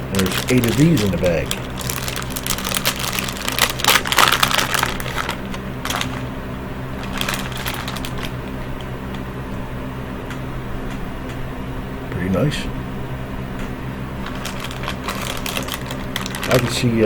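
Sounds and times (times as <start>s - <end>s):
plastic bag crinkling: 0.0s - 9.2s, 14.2s - 17.0s
steady low hum: 0.0s - 17.0s.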